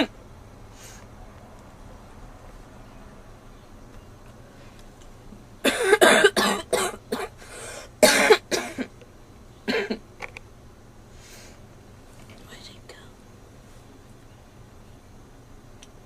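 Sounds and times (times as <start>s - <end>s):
girl coughing: 5.6s - 7.4s, 8.0s - 8.9s, 9.7s - 10.0s.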